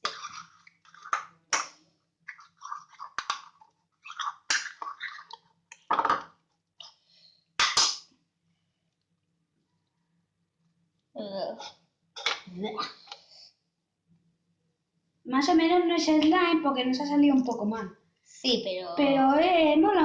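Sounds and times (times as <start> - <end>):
slime squelching: 0.0 - 5.9.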